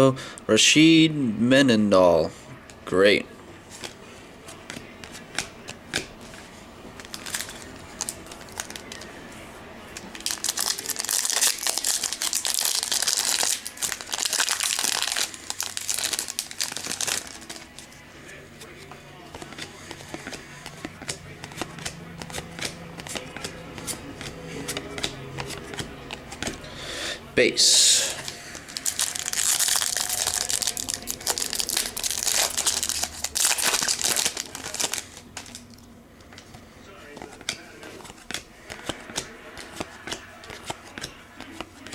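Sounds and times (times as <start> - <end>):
wrapper crinkling: 7.0 - 9.1, 10.0 - 18.0, 28.0 - 35.9.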